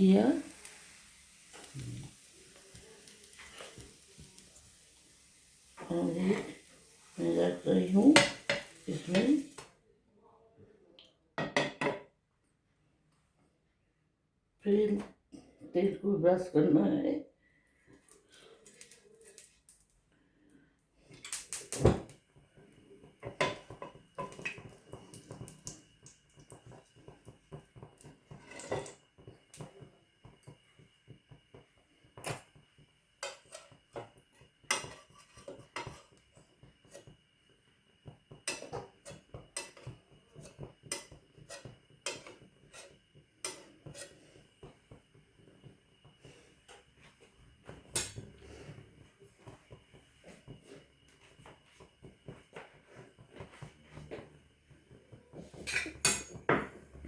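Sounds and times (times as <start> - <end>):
utensils knocking against a pan: 7.9 - 9.4, 11.4 - 12.1, 23.2 - 25.5, 38.1 - 45.0, 55.4 - 57.0.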